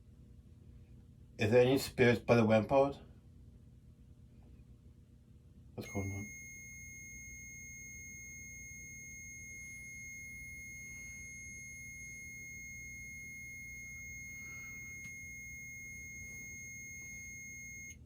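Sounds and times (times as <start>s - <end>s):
low steady hum: 0.0s - 18.0s
high-pitched electronic tone: 5.8s - 18.0s.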